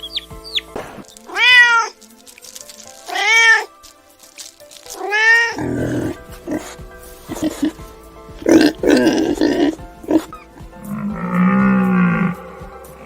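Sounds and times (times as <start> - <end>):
background music: 0.0 - 13.0
cat meowing: 1.3 - 1.9, 3.1 - 3.7, 5.0 - 5.6.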